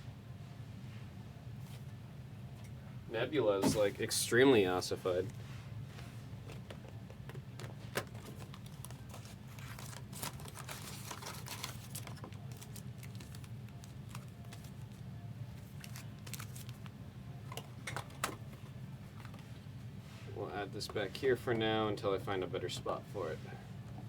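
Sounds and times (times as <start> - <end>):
steady low hum: 0.0 - 24.0
foil wrappers crinkling: 8.0 - 17.0.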